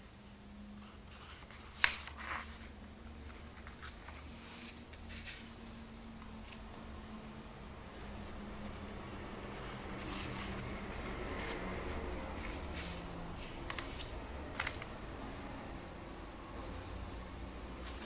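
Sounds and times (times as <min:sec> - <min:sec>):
paper pages rustling: 0:00.8 - 0:05.8, 0:08.2 - 0:15.0, 0:16.6 - 0:18.0
paper crinkles and taps: 0:01.5 - 0:02.4, 0:13.6 - 0:14.9.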